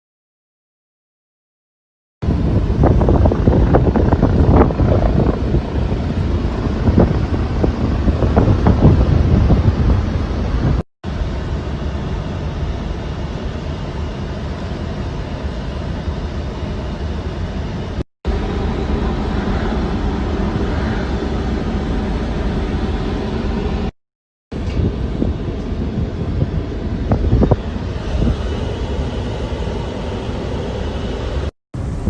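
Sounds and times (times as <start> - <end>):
wind buffeting microphone: 2.2 - 13.0, 24.5 - 32.0
vehicle rumble: 2.2 - 23.9, 24.5 - 32.0.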